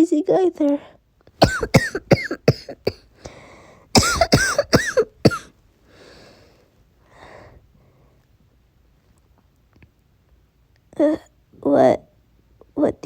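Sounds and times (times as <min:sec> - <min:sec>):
person coughing harshly: 0:01.4 - 0:03.1, 0:04.0 - 0:05.5.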